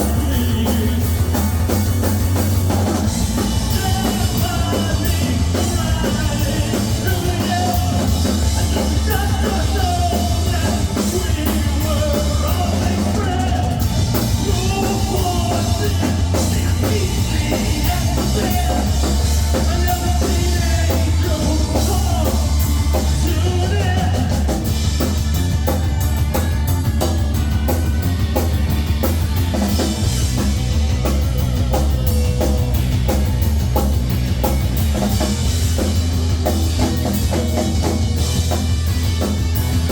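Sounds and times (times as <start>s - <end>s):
drum kit: 0.0s - 39.9s
heavy bass: 0.0s - 39.9s
rock band playing: 0.0s - 39.9s.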